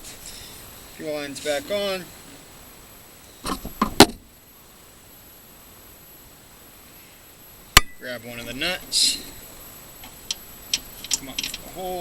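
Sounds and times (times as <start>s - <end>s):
faint steady hiss: 0.0s - 12.0s
small metal parts clattering: 11.0s - 11.7s.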